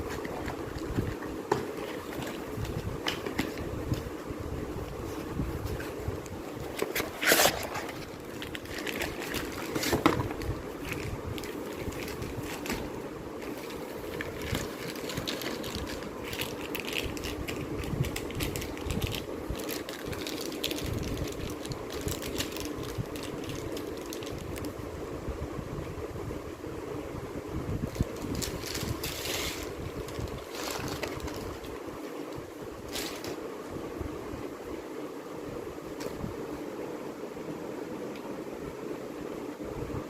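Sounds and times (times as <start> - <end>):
steady low hum: 0.0 - 40.0
packaging being handled: 5.0 - 24.7, 27.9 - 31.8, 32.8 - 33.5.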